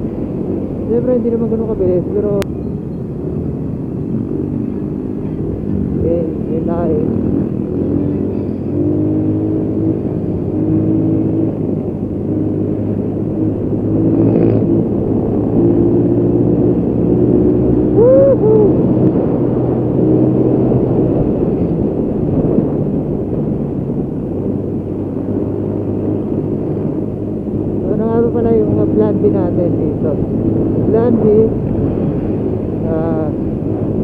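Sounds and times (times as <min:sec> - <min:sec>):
wind rumble on microphone: 0:00.0 - 0:34.0.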